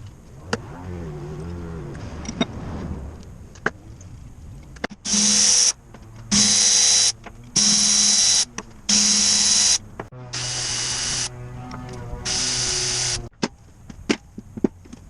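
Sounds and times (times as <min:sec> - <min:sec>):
low hum: 0:00.0 - 0:04.9, 0:10.0 - 0:13.3
power tool bursts: 0:12.2 - 0:13.3.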